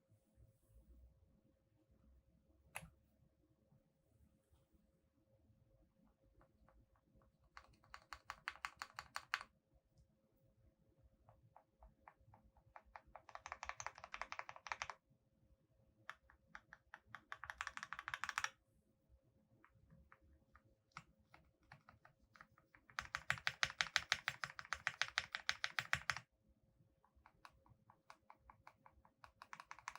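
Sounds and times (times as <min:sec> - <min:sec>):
mechanical keyboard typing: 0:07.5 - 0:09.5, 0:11.8 - 0:15.0, 0:16.1 - 0:18.6, 0:20.9 - 0:26.3, 0:27.2 - 0:29.9.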